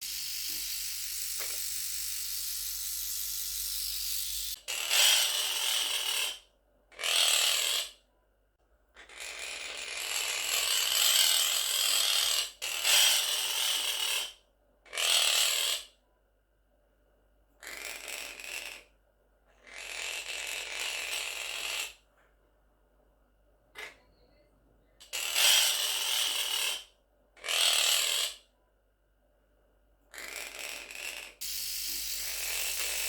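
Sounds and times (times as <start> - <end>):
steady hiss: 0.0 - 4.6, 31.4 - 33.0
parrot imitating trimmer buzz: 0.0 - 6.4, 27.4 - 28.4, 30.1 - 33.0.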